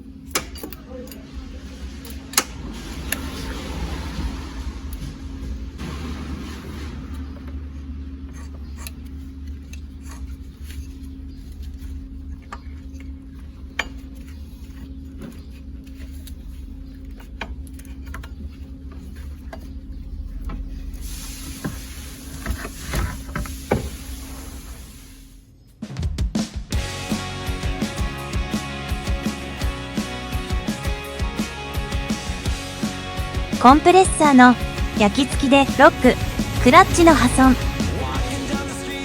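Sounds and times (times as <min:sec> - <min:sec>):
hiss: 0:21.0 - 0:25.4
van engine running: 0:26.8 - 0:39.0.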